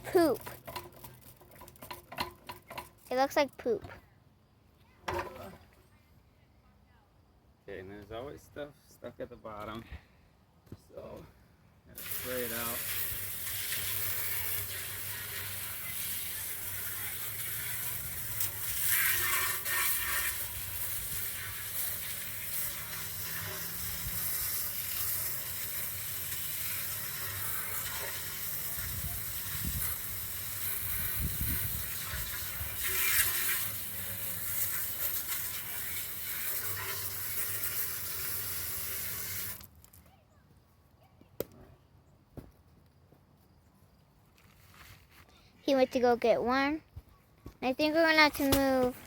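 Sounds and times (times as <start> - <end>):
garden hose spraying water: 0.0 - 3.8, 11.9 - 39.8, 47.7 - 49.0.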